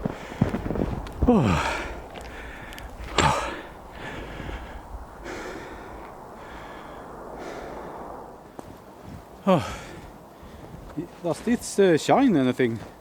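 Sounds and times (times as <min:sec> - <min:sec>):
man breathing hard: 0:00.0 - 0:08.2, 0:09.4 - 0:10.9.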